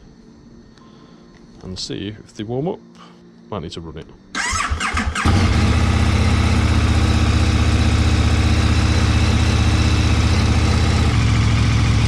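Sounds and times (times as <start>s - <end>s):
motorcycle engine idling: 4.4s - 12.0s.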